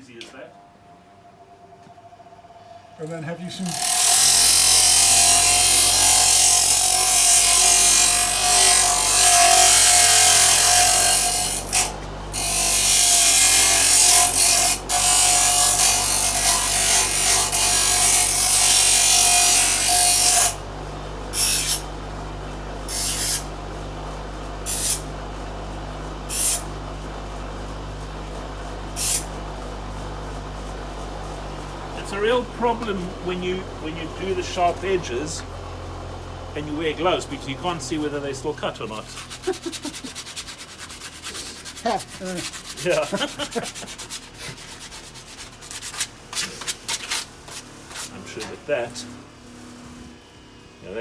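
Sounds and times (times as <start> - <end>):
power grinder grinding metal: 3.5 - 20.6, 21.3 - 22.0, 22.8 - 23.5, 24.6 - 25.1, 26.3 - 26.7, 28.9 - 29.3, 31.9 - 35.6, 36.5 - 50.2.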